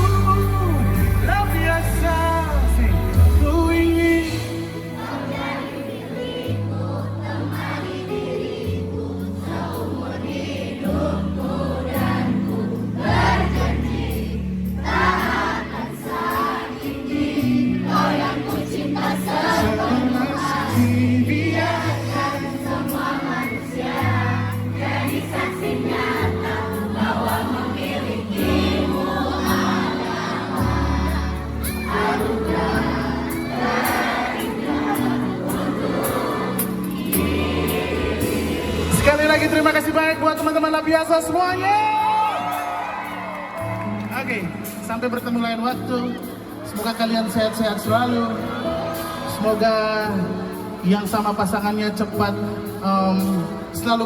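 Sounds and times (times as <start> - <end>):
audience singing along: 0.0 - 40.6, 45.7 - 54.0
live band playing pop ballad: 0.0 - 54.0.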